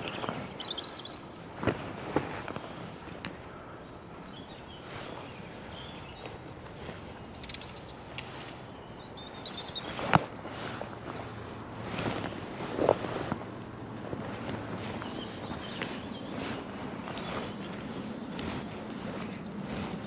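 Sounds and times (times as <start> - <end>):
blackbird singing: 0.0 - 1.2, 3.8 - 6.4, 7.2 - 10.1, 15.0 - 20.0.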